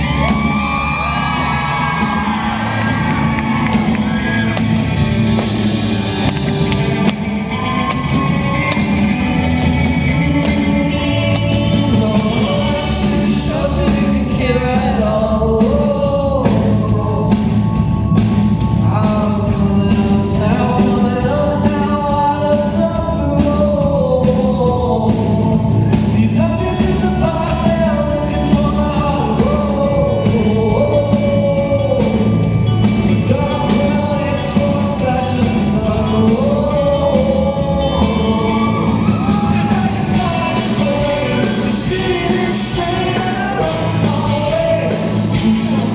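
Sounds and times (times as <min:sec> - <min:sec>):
band with drum beat: 0:00.0 - 0:45.9
person singing: 0:00.0 - 0:45.9.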